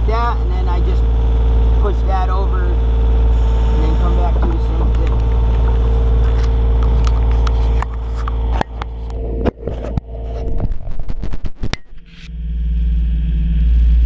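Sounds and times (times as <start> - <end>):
excavator diesel engine running: 0.0 - 10.6.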